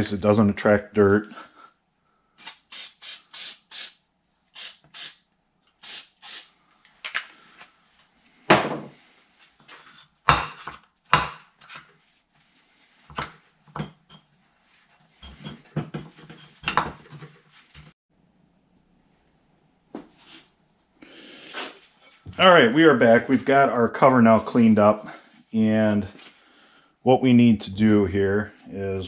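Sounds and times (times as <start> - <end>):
aerosol can spraying: 2.4 - 4.0, 4.6 - 5.2, 5.8 - 6.5.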